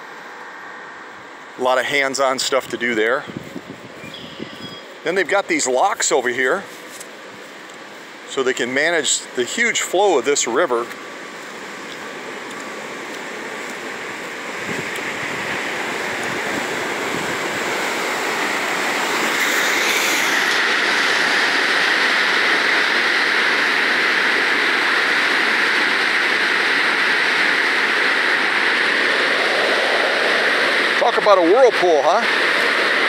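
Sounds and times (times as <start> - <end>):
river water rushing: 10.9 - 33.0.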